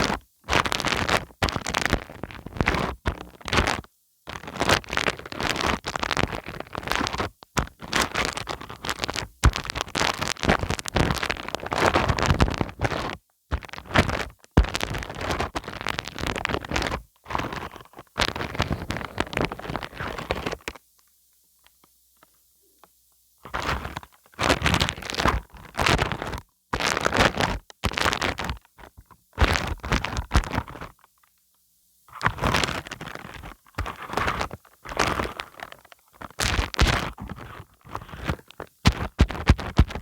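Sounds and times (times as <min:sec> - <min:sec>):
sticky glue crackling and scraping: 0:33.8 - 0:40.0.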